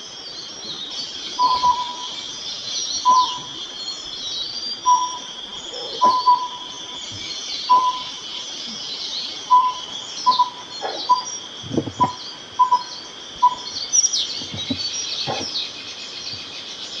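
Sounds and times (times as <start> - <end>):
high thin birdsong: 0.0 - 17.0.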